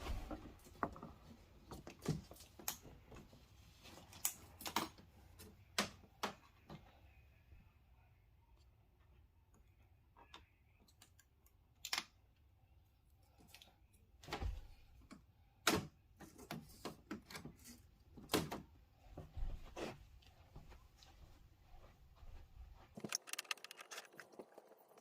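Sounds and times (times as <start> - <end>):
plastic and metal parts clicking: 23.0 - 25.0.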